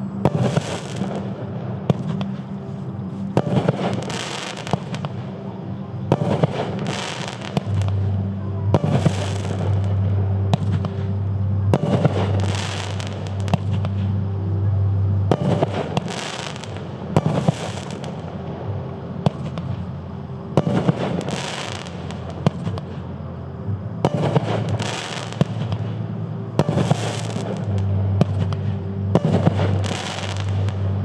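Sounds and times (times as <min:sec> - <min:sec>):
fireworks crackling overhead: 0:00.0 - 0:31.0
fireworks launching bangs: 0:00.2 - 0:05.4, 0:06.1 - 0:11.1, 0:11.7 - 0:14.0, 0:15.3 - 0:18.4, 0:20.6 - 0:23.0, 0:24.0 - 0:26.0, 0:26.6 - 0:30.8.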